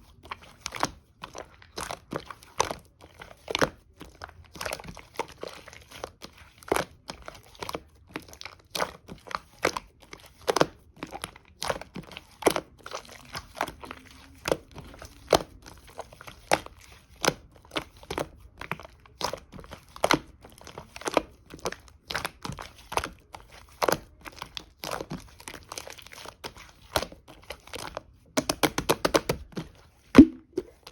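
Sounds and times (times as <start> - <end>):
slime crackling pops: 30.2 - 30.8.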